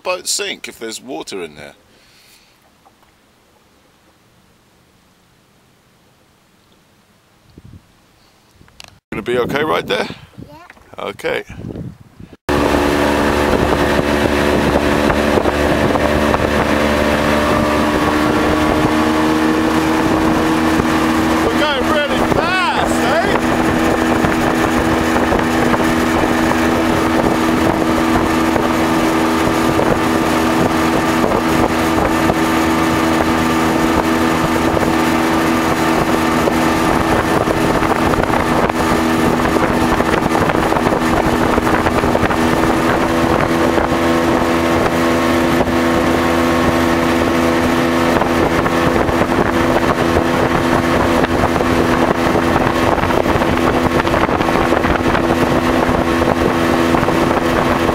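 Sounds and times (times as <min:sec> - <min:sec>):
motorboat engine droning: 0:12.5 - 0:57.9
water rushing: 0:12.5 - 0:57.9.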